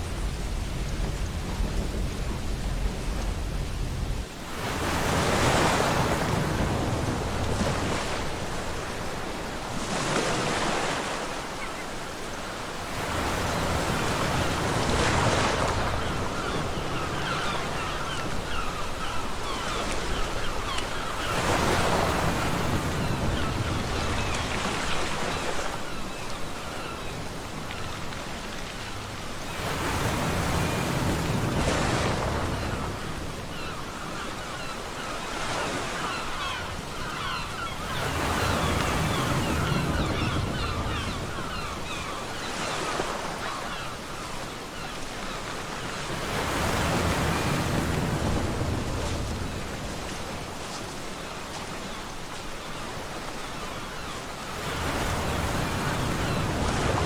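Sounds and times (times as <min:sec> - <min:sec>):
water washing on shore: 0:00.0 - 0:57.0
waves breaking on beach: 0:00.0 - 0:57.0.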